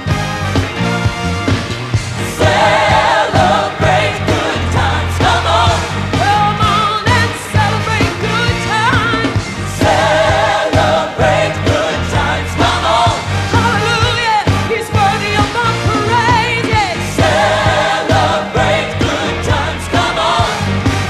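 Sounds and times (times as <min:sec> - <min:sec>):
bass and drums: 0:00.0 - 0:21.0
choir singing: 0:02.2 - 0:06.9, 0:09.7 - 0:14.2, 0:16.3 - 0:21.0.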